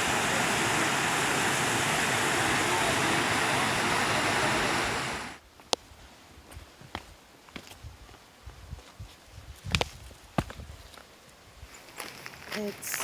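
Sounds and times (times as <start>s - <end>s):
waterfall roaring: 0.0s - 5.4s.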